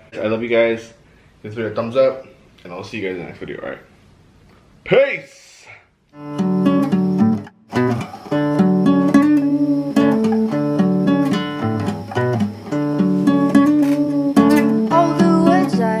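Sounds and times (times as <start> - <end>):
guitar plucked and strummed chords: 6.1 - 16.0.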